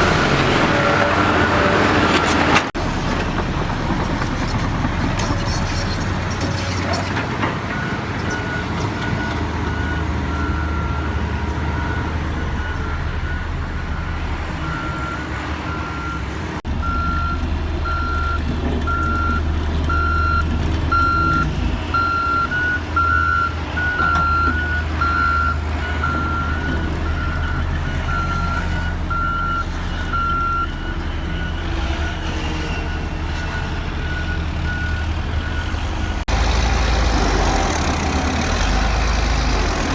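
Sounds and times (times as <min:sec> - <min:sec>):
diesel engine drone: 0:00.0 - 0:39.9
reversing alarm beeping: 0:07.7 - 0:35.8.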